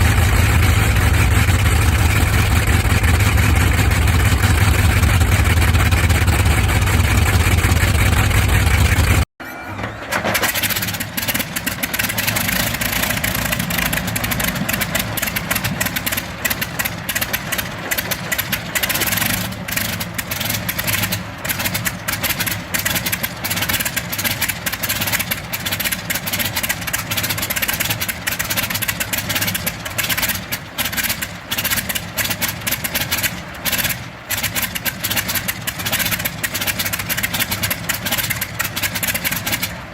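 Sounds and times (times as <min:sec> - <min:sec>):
propeller engine running unevenly: 0:00.0 - 0:09.3, 0:10.4 - 0:39.9
propeller aircraft engine running: 0:00.0 - 0:39.9.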